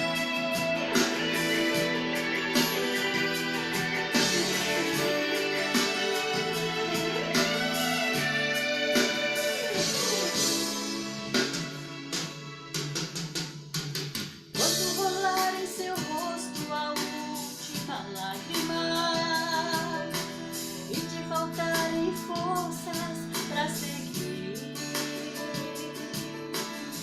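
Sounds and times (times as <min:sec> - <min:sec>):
gospel band playing: 0:00.0 - 0:13.2.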